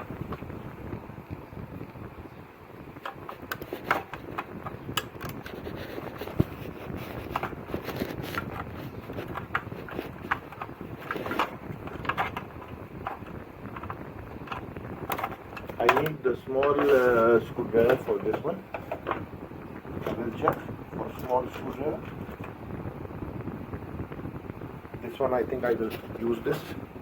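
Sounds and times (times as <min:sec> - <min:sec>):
rustling handling noise: 0:02.9 - 0:22.7, 0:25.0 - 0:27.0
hand tools clicking and scraping: 0:03.0 - 0:19.3, 0:20.0 - 0:22.6.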